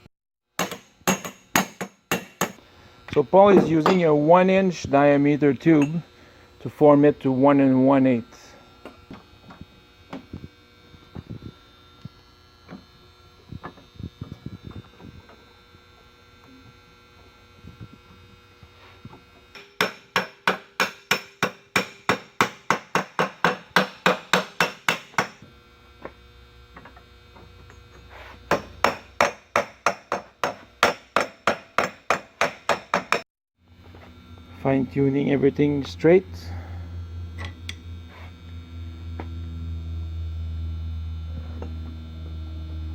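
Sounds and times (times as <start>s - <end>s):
hammer striking metal strip: 0.6s - 2.6s, 19.6s - 25.4s, 28.5s - 33.2s.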